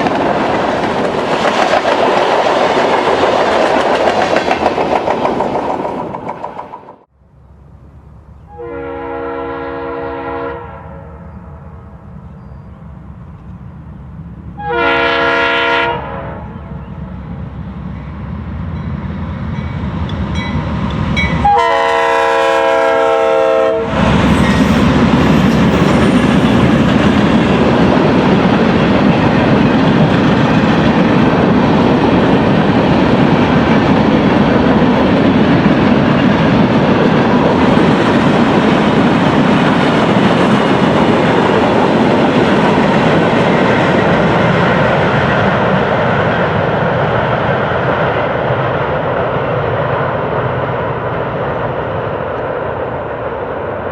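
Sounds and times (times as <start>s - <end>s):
wheels clacking on rail joints: 0.0s - 7.0s
train rumbling past: 0.0s - 53.9s
locomotive air horn: 8.5s - 11.4s, 14.6s - 16.8s, 21.4s - 24.7s.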